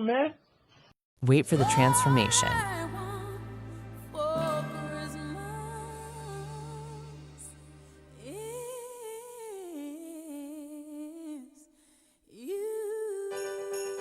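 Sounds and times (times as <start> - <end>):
wavering vocal notes: 1.6 - 11.7.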